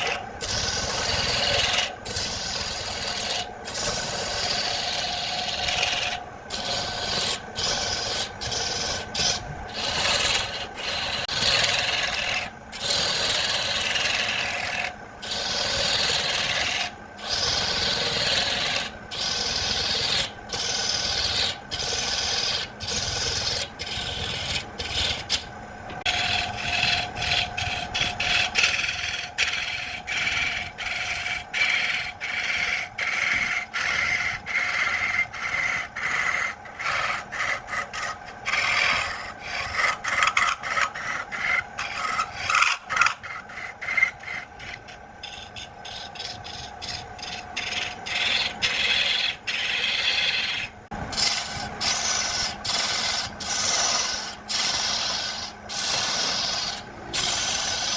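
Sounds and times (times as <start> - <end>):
rasp scraping wood: 0.0 - 57.9.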